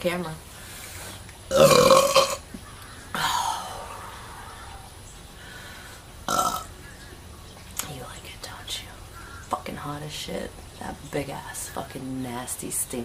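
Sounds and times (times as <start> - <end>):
woman burping: 1.5 - 2.5, 6.3 - 6.7.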